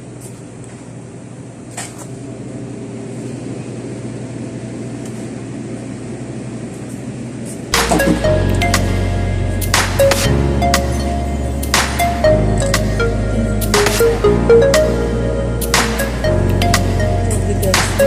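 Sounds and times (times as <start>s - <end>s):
mechanical hum with hiss: 0.0s - 18.0s
music with strong bass: 7.8s - 18.0s.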